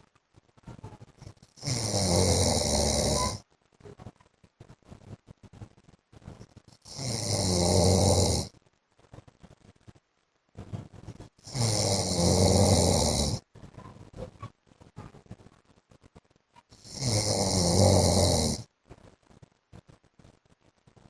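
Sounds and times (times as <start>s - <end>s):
man snoring: 1.6s - 3.4s, 6.8s - 8.5s, 11.4s - 13.4s, 16.8s - 18.7s.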